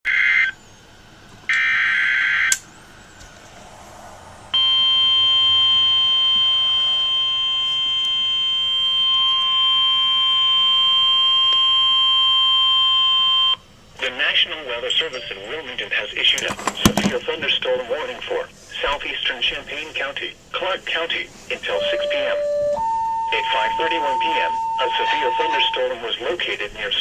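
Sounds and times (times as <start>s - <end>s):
single-pitch warning alarm tone: 4.5s - 13.6s, 21.7s - 26.3s
digital data screech: 23.2s - 27.0s.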